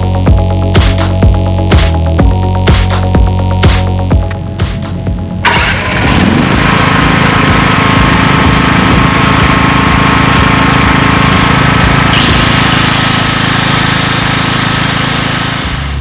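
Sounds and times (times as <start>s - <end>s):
generator engine running: 0.0s - 16.0s
thin high whine: 12.1s - 16.0s.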